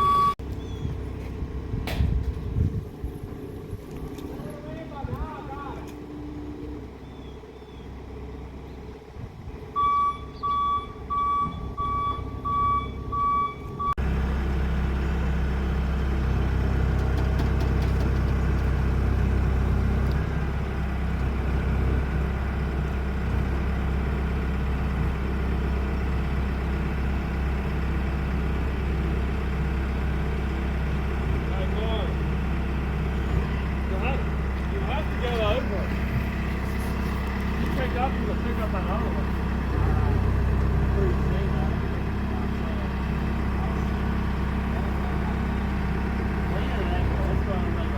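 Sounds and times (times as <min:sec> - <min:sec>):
reversing alarm beeping: 0:00.0 - 0:00.4, 0:09.8 - 0:14.0
forklift engine running: 0:00.0 - 0:47.9.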